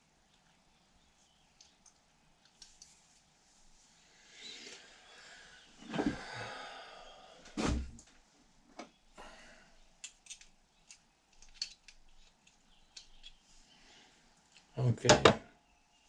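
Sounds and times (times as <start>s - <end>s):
small parts clicking and tapping: 10.0s - 13.4s
knocks on workbench: 15.1s - 15.4s.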